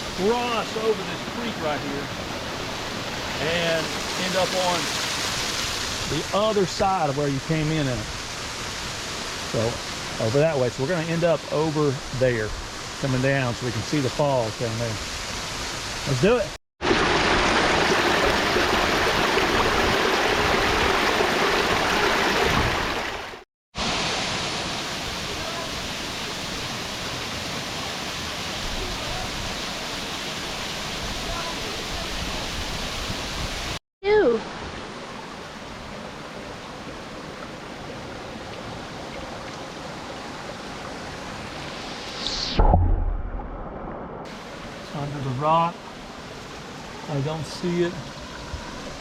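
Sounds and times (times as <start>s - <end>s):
creek and waterfall over rocks: 0.0s - 42.2s, 44.0s - 49.0s
sharp hiss: 41.8s - 42.6s.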